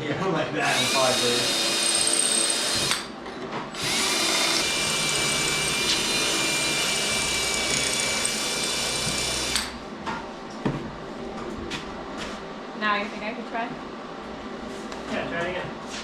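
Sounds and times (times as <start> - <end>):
electric drill boring into metal: 0.7 - 3.1, 3.8 - 9.8.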